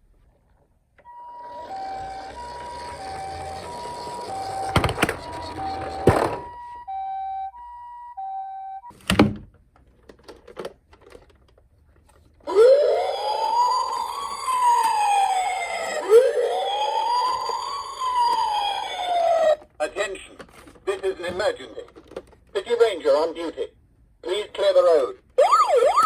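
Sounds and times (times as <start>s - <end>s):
two-tone toy siren: 1.0s - 8.9s, 12.5s - 19.6s, 25.4s - 26.0s
wailing toy siren: 1.1s - 8.8s, 12.5s - 19.6s, 25.4s - 26.0s.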